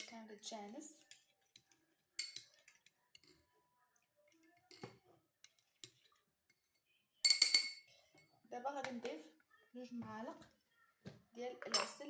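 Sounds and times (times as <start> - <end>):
spoon stirring in a bowl: 0.0 - 9.4.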